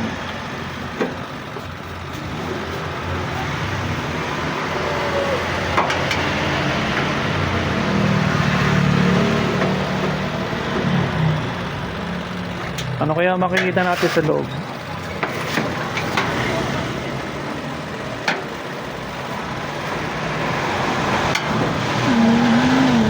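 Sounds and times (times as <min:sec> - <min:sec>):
traffic rumble: 0:00.0 - 0:23.0
vehicle engine passing: 0:02.2 - 0:13.3, 0:19.0 - 0:23.0.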